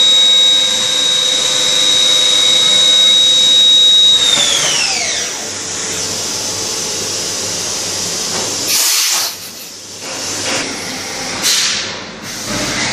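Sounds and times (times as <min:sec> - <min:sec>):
spindle whine winding down: 0:00.0 - 0:05.7
coolant spray hiss: 0:06.7 - 0:10.3.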